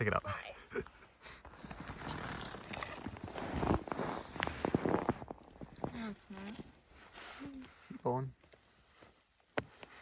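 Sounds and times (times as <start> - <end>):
crunching and scuffing in snow: 1.6 - 7.4.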